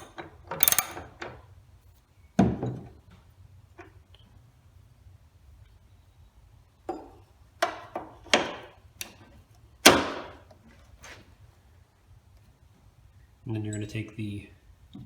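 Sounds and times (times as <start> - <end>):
metal tools clanking: 0.0 - 1.3.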